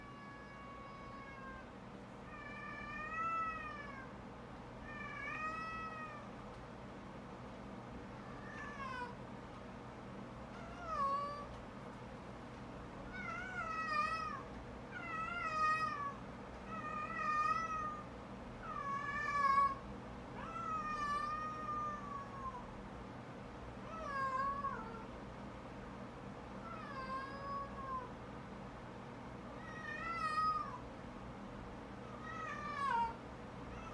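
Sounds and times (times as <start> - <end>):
cat meowing: 32.2 - 33.9.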